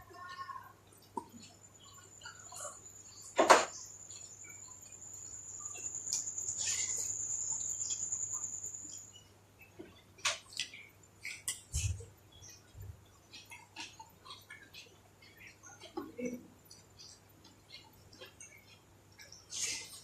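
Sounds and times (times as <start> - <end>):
steady high-pitched tone: 4.2 - 9.2
wet chewing mouth clicks: 13.3 - 20.0.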